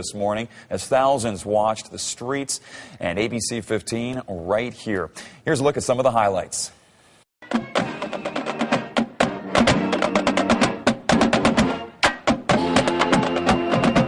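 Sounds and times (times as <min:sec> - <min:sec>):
marching band playing: 0:07.4 - 0:14.0
rapid snare drum strikes: 0:07.5 - 0:14.0.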